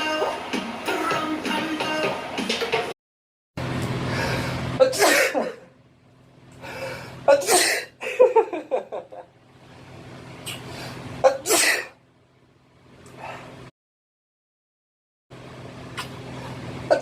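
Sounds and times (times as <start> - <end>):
person sneezing: 4.8 - 5.6, 7.3 - 8.0, 10.5 - 12.0.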